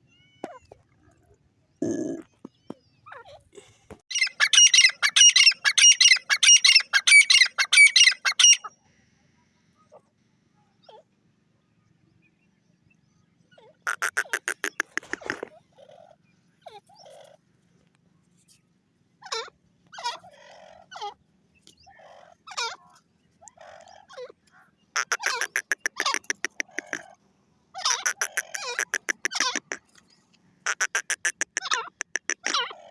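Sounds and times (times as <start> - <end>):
francolin calling: 4.1 - 8.7, 13.9 - 15.5, 25.0 - 27.2, 27.8 - 29.9, 30.7 - 32.9.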